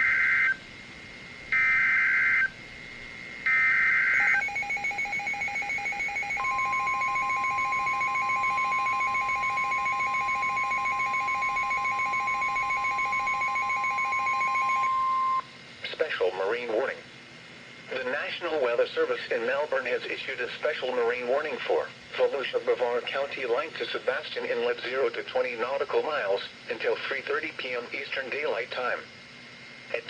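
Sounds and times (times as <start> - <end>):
harsh buzzing data bursts: 1.4 - 15.4
steady attention tone: 1.6 - 15.5
rapid pulsing beep: 4.1 - 15.5.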